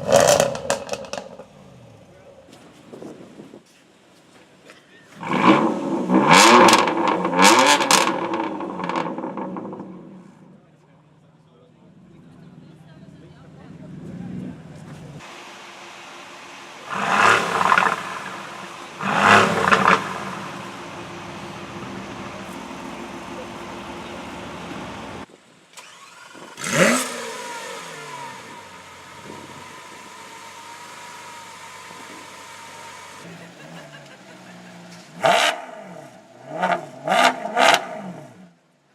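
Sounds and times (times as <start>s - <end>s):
sports car engine revving: 0.0s - 2.6s, 5.2s - 10.4s, 16.0s - 38.6s.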